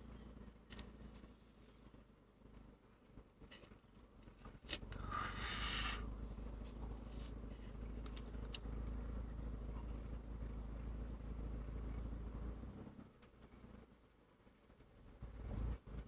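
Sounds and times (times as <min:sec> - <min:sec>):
car engine idling unsteadily: 0:00.0 - 0:13.9
short hiss: 0:05.2 - 0:06.1.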